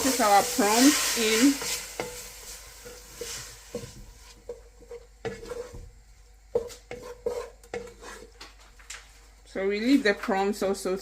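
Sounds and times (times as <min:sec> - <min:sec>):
utensil scraping a pan: 0:00.0 - 0:05.9, 0:06.5 - 0:08.4
prawns sizzling in a frying pan: 0:00.0 - 0:08.2.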